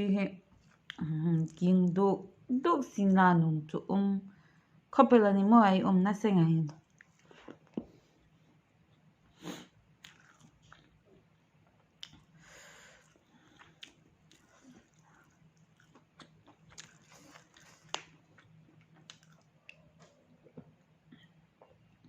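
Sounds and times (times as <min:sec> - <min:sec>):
faint chewing and biting: 0:00.5 - 0:01.7, 0:06.7 - 0:22.0
mouth clicks and crunches: 0:10.0 - 0:11.0, 0:11.8 - 0:12.4, 0:13.0 - 0:21.7.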